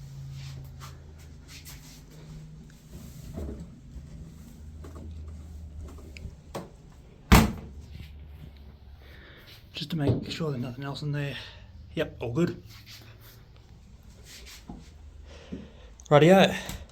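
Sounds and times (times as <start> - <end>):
laundry handling knocks and rustles: 0.7 - 8.2.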